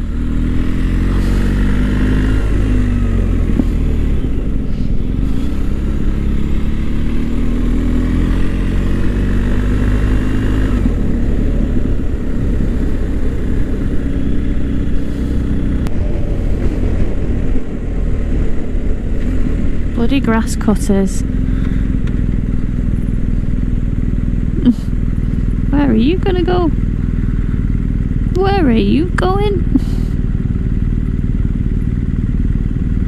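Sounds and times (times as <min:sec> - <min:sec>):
motorcycle engine running: 0:00.0 - 0:33.0
wind rushing over microphone: 0:08.6 - 0:27.5.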